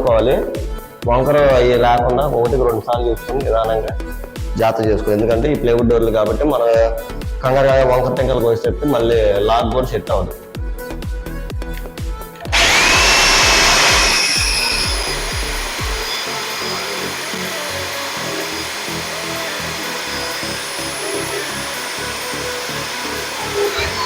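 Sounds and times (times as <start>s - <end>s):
background music with steady beat: 0.0s - 24.0s
electric drill boring into wood: 12.5s - 24.0s.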